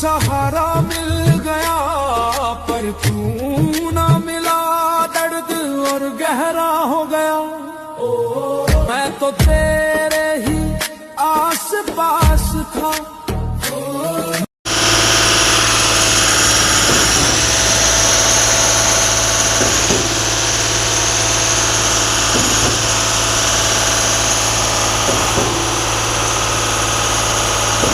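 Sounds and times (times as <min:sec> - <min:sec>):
concrete pump engine drone: 0:14.7 - 0:27.9.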